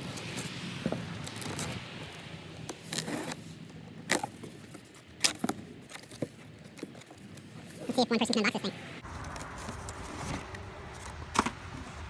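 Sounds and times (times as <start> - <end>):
cardboard box scraping and rustling: 2.8 - 8.0, 9.1 - 11.9.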